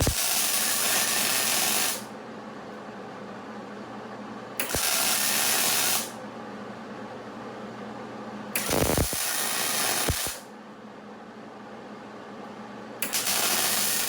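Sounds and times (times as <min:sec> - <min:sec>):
steady low hum: 0:00.0 - 0:00.7
welding arc crackling: 0:00.0 - 0:02.0, 0:04.6 - 0:06.1, 0:08.6 - 0:10.4, 0:13.0 - 0:14.0.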